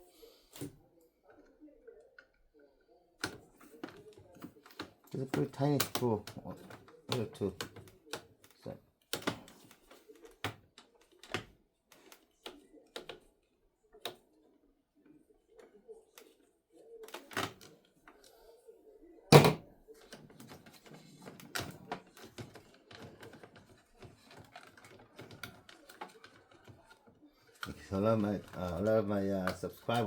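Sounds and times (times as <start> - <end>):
plastic casing clicks and knocks: 19.4 - 26.8.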